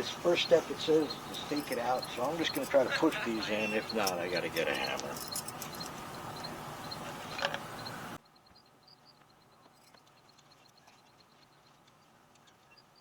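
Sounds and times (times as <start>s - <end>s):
faint high chirps: 0.0s - 7.1s
steady rustling: 0.0s - 8.2s.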